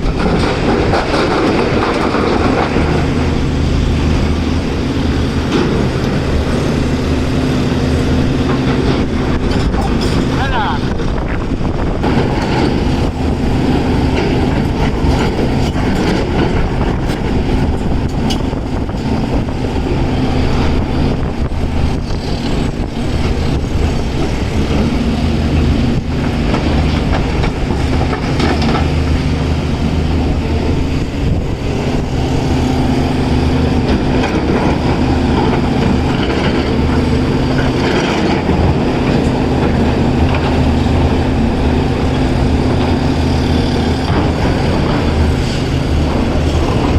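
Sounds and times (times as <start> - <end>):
knocks and clatter: 0.0 - 3.3, 14.1 - 19.4, 23.2 - 29.3
diesel engine running under load: 0.0 - 46.9.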